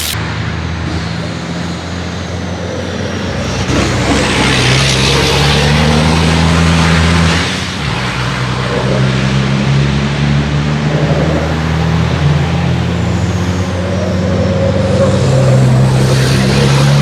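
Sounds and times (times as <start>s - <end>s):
high turbo whine: 0.0s - 5.6s
truck engine running hard: 0.0s - 17.0s.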